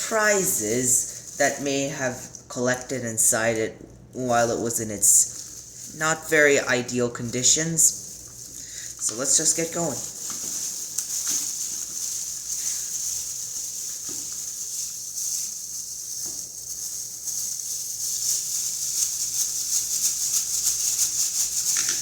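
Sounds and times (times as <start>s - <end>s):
high-pitched hiss: 7.6s - 19.3s.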